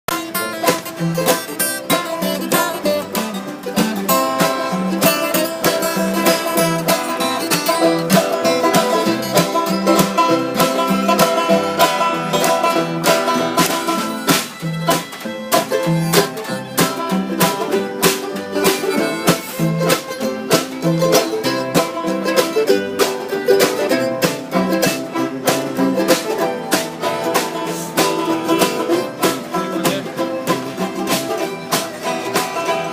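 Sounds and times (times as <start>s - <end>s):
rapid picked banjo: 0.0s - 32.9s
guitar: 0.1s - 32.9s.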